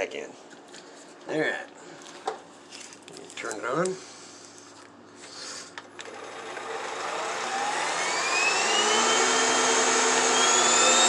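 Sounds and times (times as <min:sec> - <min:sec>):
vacuum motor whine: 0:06.0 - 0:11.0.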